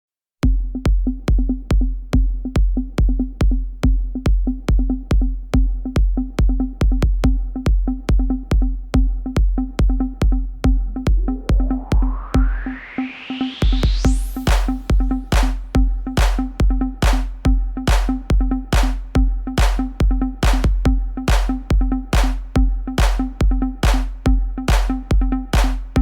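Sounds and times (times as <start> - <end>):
four-on-the-floor kick drum: 0.4 - 12.6, 13.6 - 26.0
electronic dance music: 1.2 - 26.0
rising synth sweep: 10.7 - 16.5.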